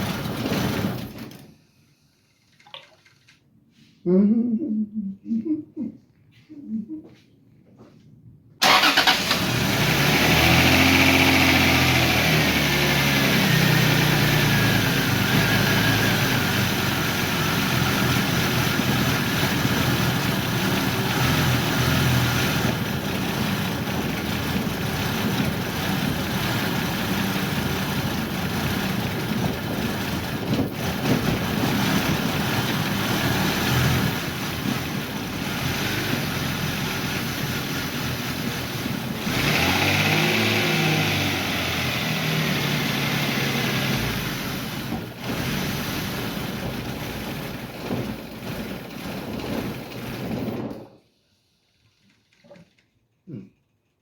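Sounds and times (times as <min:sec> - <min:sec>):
car engine idling: 0:08.6 - 0:40.3.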